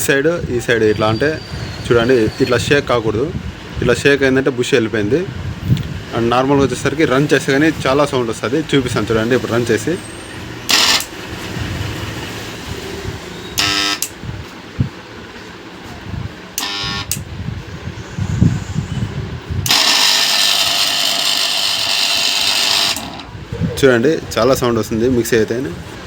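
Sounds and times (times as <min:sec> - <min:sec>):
mixer grinder motor running harshly: 0:10.7 - 0:12.1, 0:13.6 - 0:14.1, 0:19.7 - 0:23.4
horn honks: 0:13.5 - 0:14.1.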